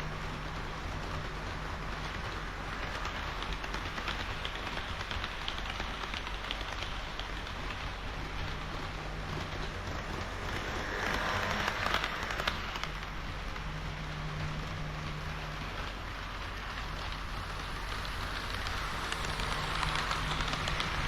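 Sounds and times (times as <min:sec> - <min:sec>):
model train wheels rattling: 0:00.0 - 0:21.0
low motor hum: 0:06.9 - 0:21.0.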